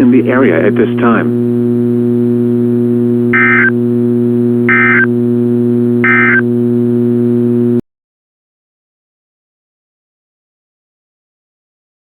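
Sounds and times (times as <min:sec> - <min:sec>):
low electrical hum: 0:00.0 - 0:07.8
high-pitched digital data tones: 0:03.4 - 0:03.7, 0:04.7 - 0:05.1, 0:06.0 - 0:06.4.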